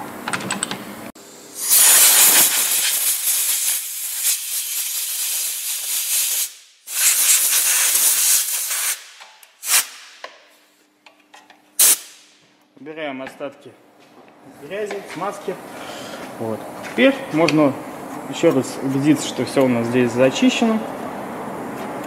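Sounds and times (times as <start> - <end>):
compressed air hissing: 1.6 - 10.1, 11.8 - 12.2.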